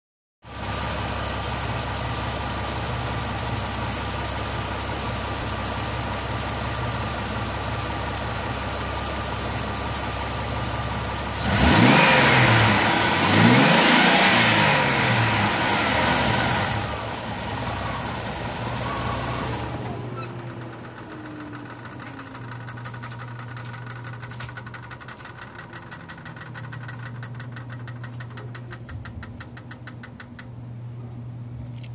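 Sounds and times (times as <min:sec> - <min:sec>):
car engine idling and revving: 0:00.5 - 0:31.9
rapid light ticking: 0:20.4 - 0:30.5.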